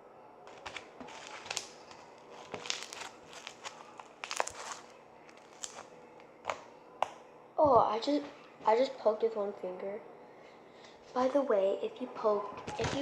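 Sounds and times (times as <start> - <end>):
slime squishing and popping: 0.5 - 7.2.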